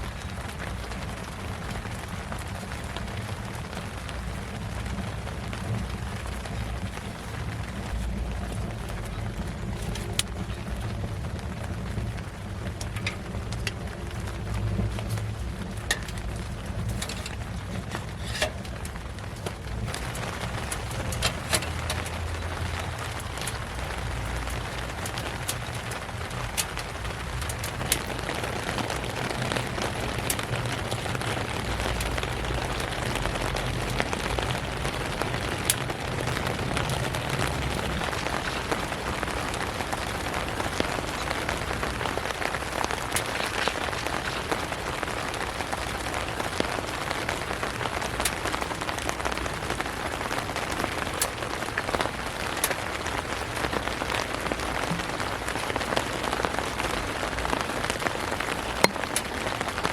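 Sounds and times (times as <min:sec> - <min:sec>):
steady rainfall: 0:00.0 - 0:59.9.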